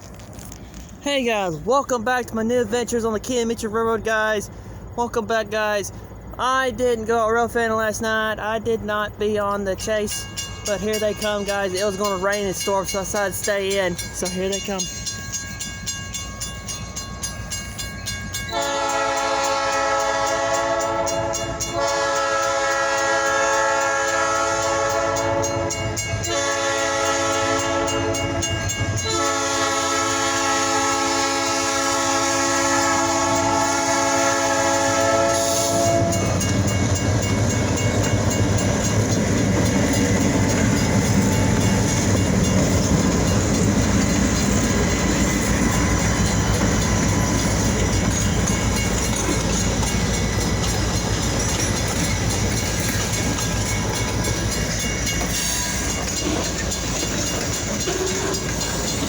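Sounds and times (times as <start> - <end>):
locomotive engines rumbling: 0.0 - 59.0
train wheels clacking on rails: 9.0 - 59.0
locomotive air horn blasts: 18.5 - 36.5.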